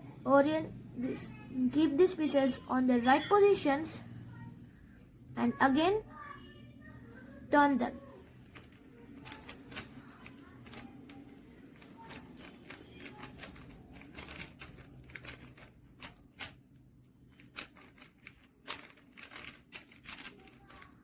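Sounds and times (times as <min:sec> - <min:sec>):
puzzle cube clicking: 0:08.4 - 0:16.6, 0:17.3 - 0:21.0.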